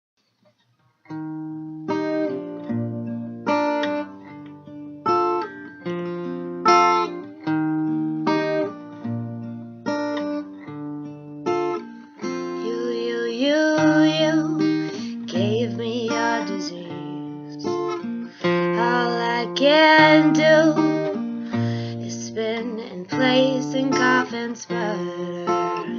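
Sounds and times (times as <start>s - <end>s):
acoustic guitar strumming chords: 1.1s - 25.9s.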